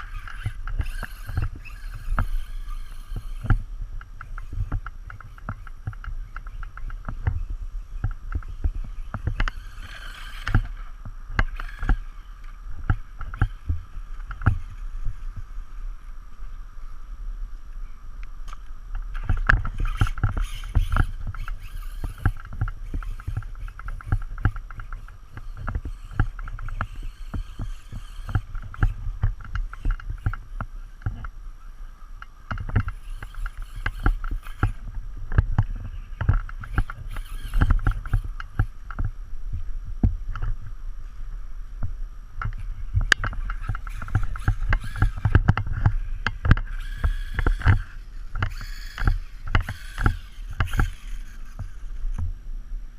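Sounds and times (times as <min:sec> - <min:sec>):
rc truck motor whine: 0:00.0 - 0:52.9
sharp clicks and knocks: 0:42.4 - 0:52.3.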